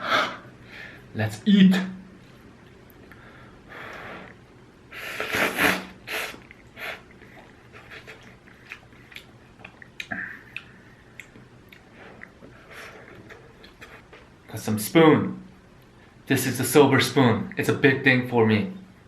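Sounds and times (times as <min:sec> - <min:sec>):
chewing with small clicks: 0:06.4 - 0:14.3.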